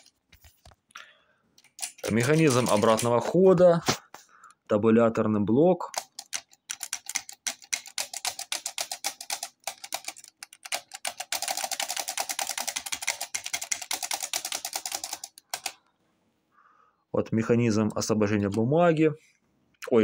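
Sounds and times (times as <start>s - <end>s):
typewriter mechanism clicking: 1.6s - 3.3s.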